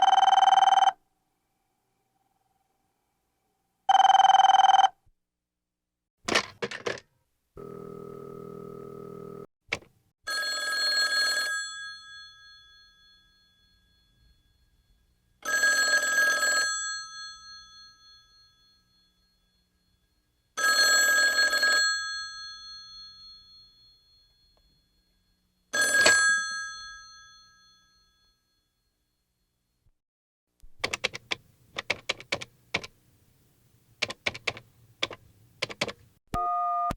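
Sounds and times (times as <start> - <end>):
telephone bell ringing: 0.0 - 1.0, 3.9 - 4.9, 10.3 - 14.3, 15.4 - 19.8, 20.6 - 25.1, 25.7 - 28.9.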